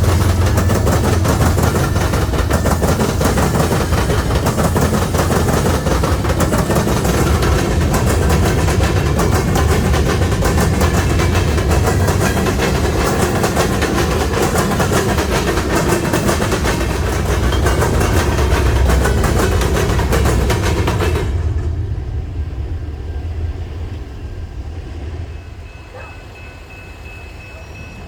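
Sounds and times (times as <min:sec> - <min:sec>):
train rumble: 0:00.0 - 0:28.0
train wheels clattering on rails: 0:00.0 - 0:28.0.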